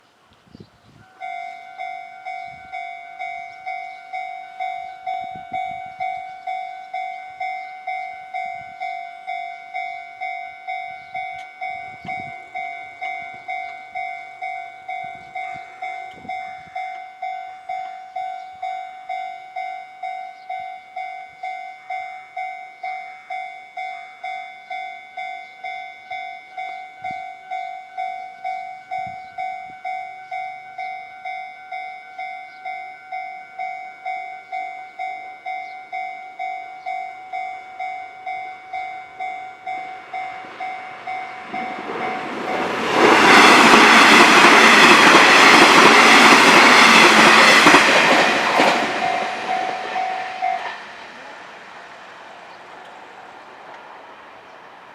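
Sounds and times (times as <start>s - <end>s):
level-crossing warning bell ringing: 1.0s - 51.5s.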